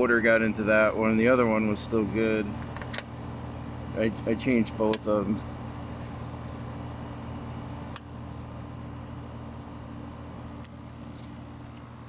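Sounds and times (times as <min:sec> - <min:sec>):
air conditioner humming: 0:00.0 - 0:12.0.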